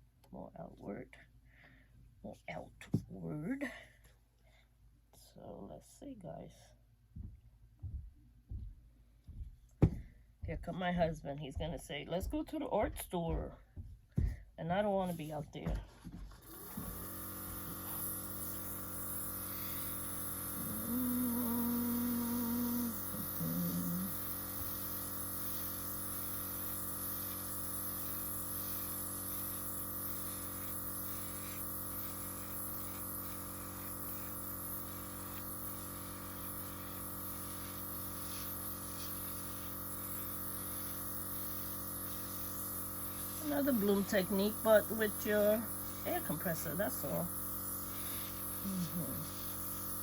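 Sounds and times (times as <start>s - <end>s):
air compressor humming and hissing: 15.1s - 50.0s.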